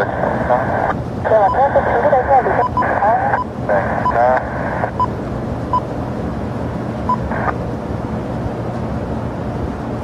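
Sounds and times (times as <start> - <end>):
radio crackle: 0.0 - 5.0
aircraft engines rumbling: 0.0 - 10.0.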